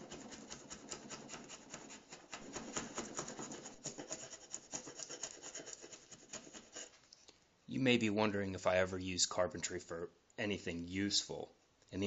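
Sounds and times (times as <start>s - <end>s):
rough scraping on plywood: 0.0s - 7.0s.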